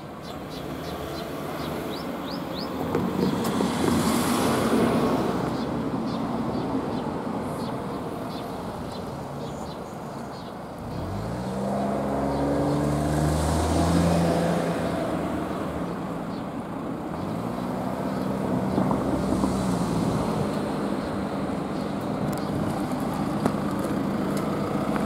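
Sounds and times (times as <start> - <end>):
vehicle engine speeding up: 10.8 - 15.4.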